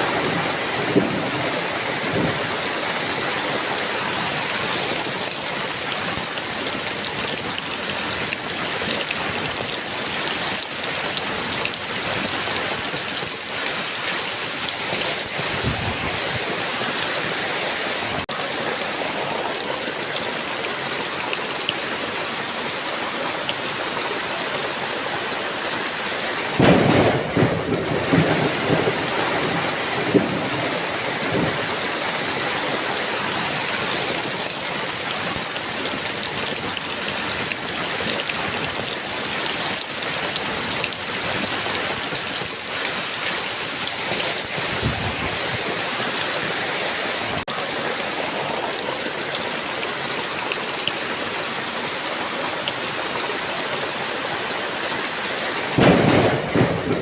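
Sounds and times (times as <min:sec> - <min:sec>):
heavy rain: 0:00.0 - 0:57.0
thunder clap rumbling: 0:26.6 - 0:31.8, 0:55.8 - 0:57.0.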